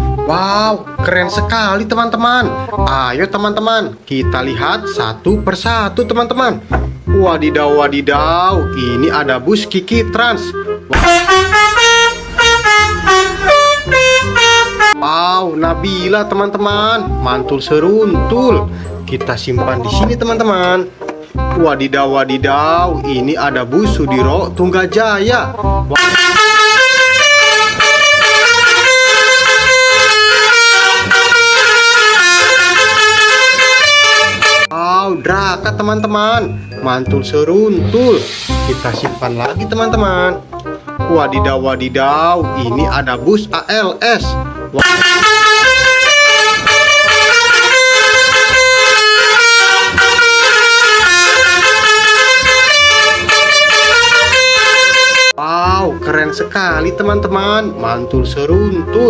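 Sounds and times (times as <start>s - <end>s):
bus air horn playing a tune: 10.7s - 15.0s, 25.9s - 34.8s, 44.8s - 55.4s
short low thumps: 11.0s - 15.0s.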